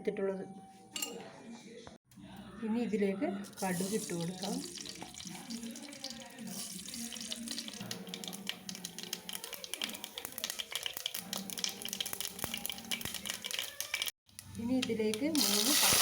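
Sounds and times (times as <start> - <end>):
oil sizzling: 3.5 - 16.0
mustard seeds popping in oil: 4.1 - 16.0.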